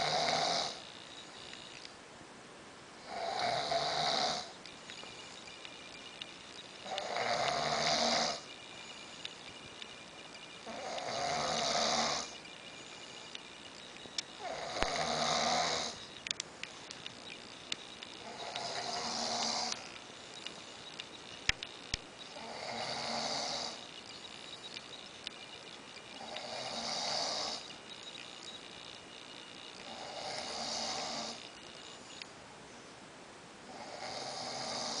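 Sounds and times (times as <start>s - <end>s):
man snoring: 0.0s - 0.8s, 3.0s - 4.6s, 6.8s - 8.5s, 10.7s - 12.4s, 14.4s - 16.0s, 18.2s - 19.9s, 22.3s - 23.9s, 26.2s - 27.7s, 29.8s - 31.4s, 33.7s - 35.0s.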